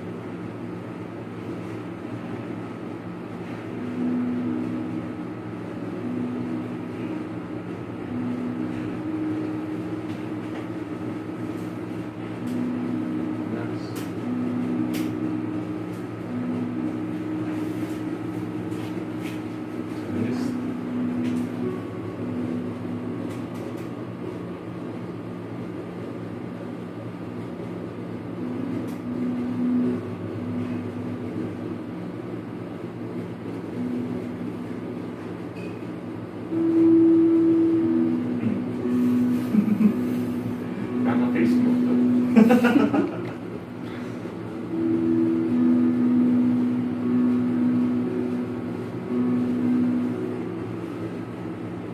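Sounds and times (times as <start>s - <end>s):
low droning hum: 0.0s - 51.9s.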